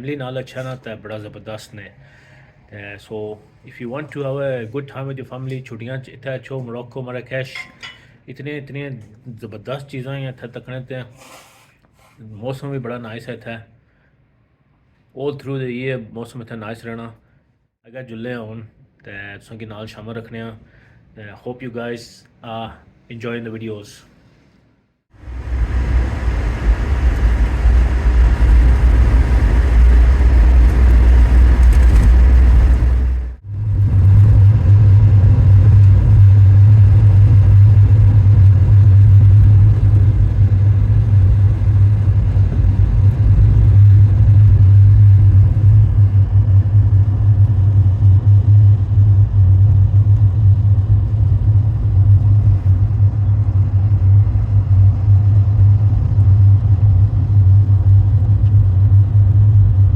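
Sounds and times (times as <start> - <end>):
car engine and tyres rumbling: 25.2 - 59.9.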